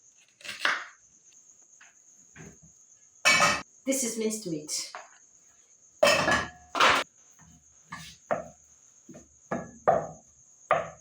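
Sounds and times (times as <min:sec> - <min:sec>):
crickets trilling: 0:00.0 - 0:11.0
kitchenware knocking and clinking: 0:03.3 - 0:03.6, 0:06.0 - 0:07.0, 0:09.5 - 0:11.0.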